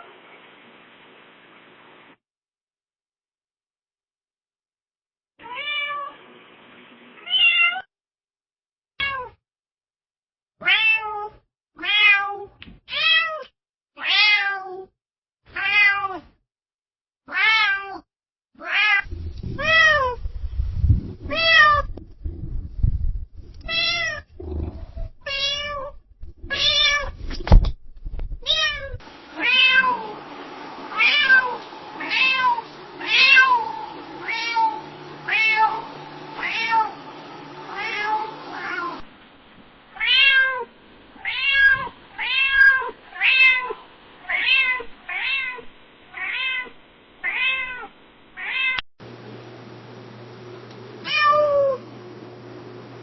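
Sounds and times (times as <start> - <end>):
cat meowing: 5.4 - 6.2, 7.2 - 7.8, 9.0 - 9.3, 10.6 - 14.9, 15.6 - 16.2, 17.3 - 18.0, 23.6 - 27.2, 28.4 - 30.1, 30.9 - 36.9, 37.7 - 39.0, 40.0 - 48.8, 51.0 - 51.8
low rumble: 19.0 - 39.1
steady hum: 19.0 - 40.0, 49.0 - 53.0.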